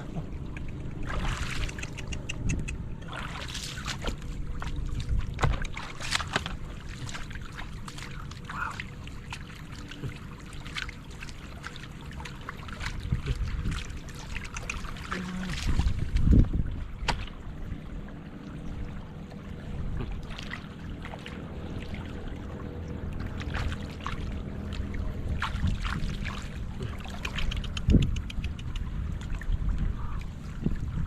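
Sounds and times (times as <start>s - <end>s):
shallow water splashing: 0.0s - 31.0s
steady low rumble: 0.0s - 31.0s.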